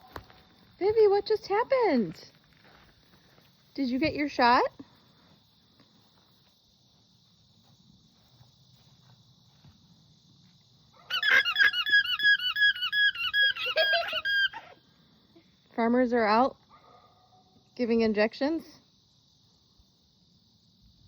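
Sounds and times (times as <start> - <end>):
alpaca alarm call: 11.0 - 14.7.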